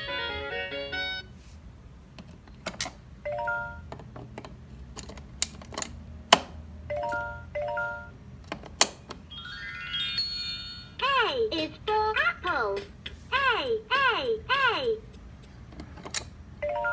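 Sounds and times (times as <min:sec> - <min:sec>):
electronic toy melody: 0:00.0 - 0:01.3, 0:06.9 - 0:08.2, 0:09.3 - 0:11.8, 0:16.6 - 0:16.9
three-note electronic chime: 0:09.3 - 0:11.0.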